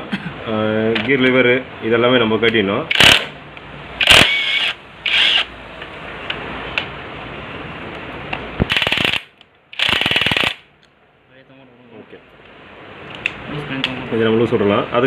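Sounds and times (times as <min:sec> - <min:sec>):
ratchet wrench clicking: 0:08.7 - 0:10.6.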